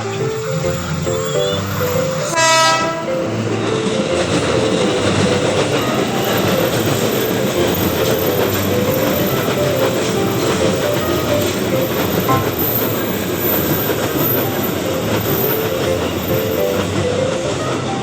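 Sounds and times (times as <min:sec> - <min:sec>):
train wheels clattering on rails: 0:00.0 - 0:18.0
train horn tone: 0:01.1 - 0:04.1, 0:12.2 - 0:13.0.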